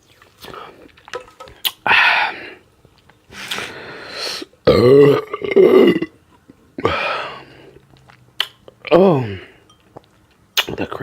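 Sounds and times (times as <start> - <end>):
woman burping loudly: 4.6 - 6.2.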